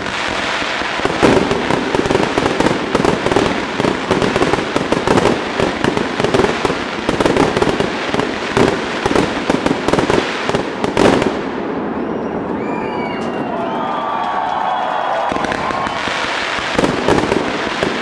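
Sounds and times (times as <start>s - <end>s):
fireworks bangs and crackles: 0.0s - 18.0s
crowd whistling: 11.8s - 16.3s.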